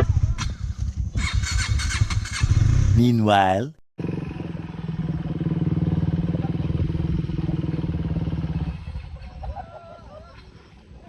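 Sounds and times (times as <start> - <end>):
motorcycle engine running: 4.0 - 9.6.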